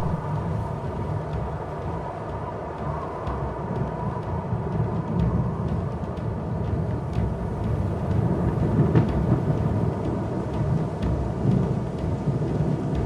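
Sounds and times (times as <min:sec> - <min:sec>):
thunder rumbling: 0:00.0 - 0:01.6.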